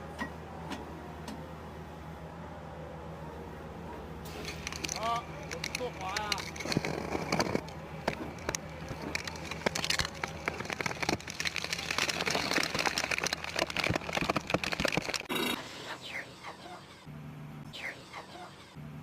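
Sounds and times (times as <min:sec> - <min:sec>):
excavator engine hum: 0:00.0 - 0:19.0
sharp clicks and rattles: 0:04.3 - 0:15.6.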